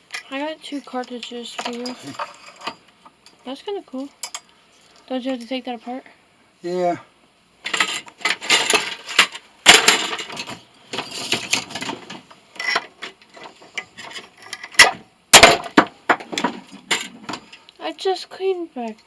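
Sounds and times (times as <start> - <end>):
hand tools scraping metal: 1.6 - 2.8, 7.7 - 15.7
sharp knocks on metal: 14.8 - 16.6.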